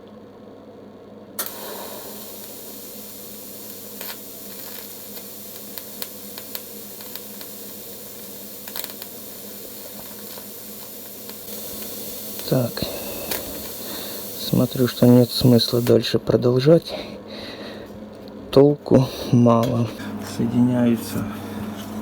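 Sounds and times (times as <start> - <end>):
welding arc striking pop: 1.4 - 16.0
welding arc hissing and crackling: 1.4 - 17.1.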